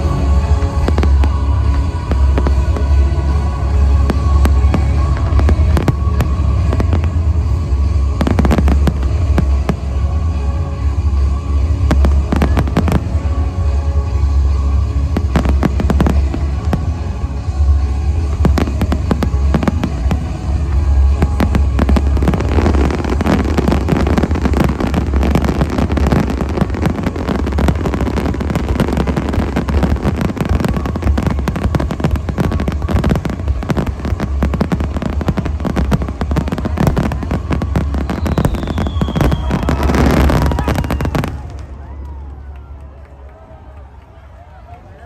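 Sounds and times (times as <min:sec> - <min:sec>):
fireworks bursts and bangs: 0:00.0 - 0:42.7
falling firework whistle: 0:21.3 - 0:42.4.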